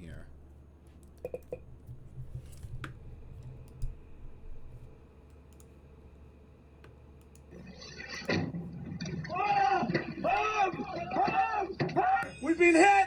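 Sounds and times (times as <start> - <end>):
low steady hum: 0.0 - 13.0
quiet computer clicks: 0.8 - 5.8, 6.8 - 7.5.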